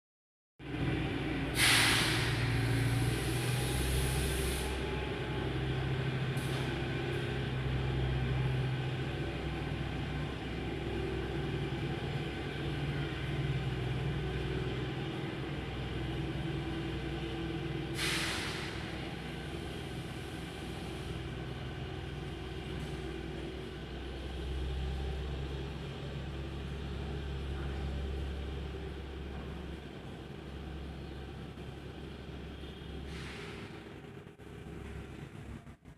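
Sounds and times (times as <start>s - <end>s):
train engine running: 0.6s - 35.9s
hissing air bursts: 1.5s - 4.9s, 17.9s - 21.1s, 33.1s - 33.8s.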